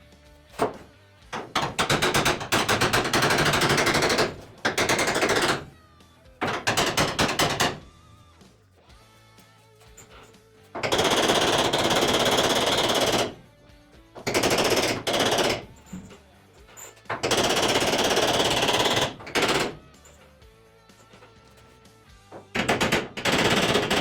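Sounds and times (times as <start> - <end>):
pneumatic hammer on sheet metal: 1.4 - 5.7, 6.4 - 7.8, 10.0 - 13.4, 14.2 - 20.3, 22.3 - 24.0.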